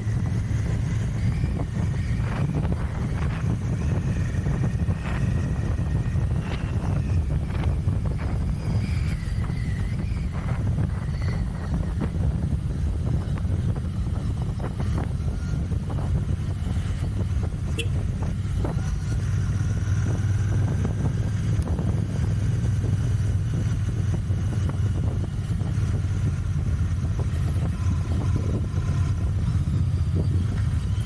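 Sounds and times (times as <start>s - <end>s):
motorcycle exhaust note: 0.0s - 31.0s.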